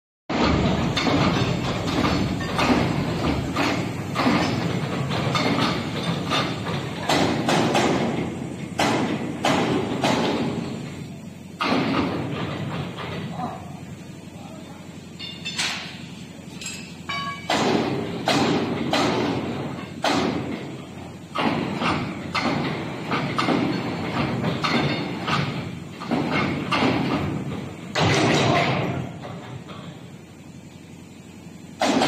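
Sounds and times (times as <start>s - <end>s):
heavy thuds striking metal coupling: 0.3s - 10.9s, 17.1s - 29.9s.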